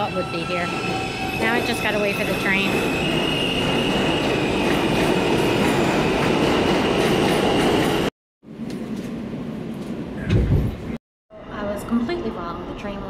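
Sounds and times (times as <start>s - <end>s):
high wheel squeal: 0.0s - 6.2s
subway train rumble: 0.0s - 13.0s.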